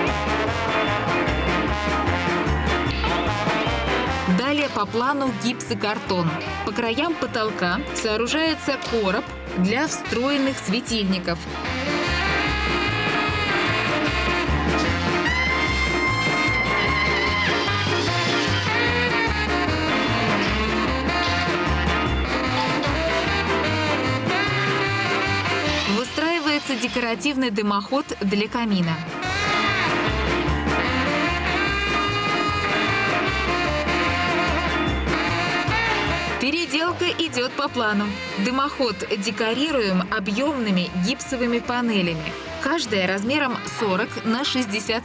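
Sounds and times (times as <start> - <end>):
walking bass: 0.0 - 44.0
swing music with brass: 0.0 - 45.0
horn holding long note: 11.4 - 26.9, 29.0 - 36.6.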